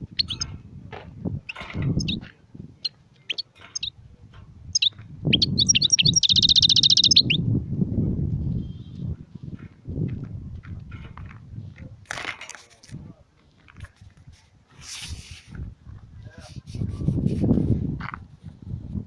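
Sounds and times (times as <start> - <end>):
finch singing and trilling: 0.0 - 0.6, 1.4 - 4.0, 4.6 - 7.4.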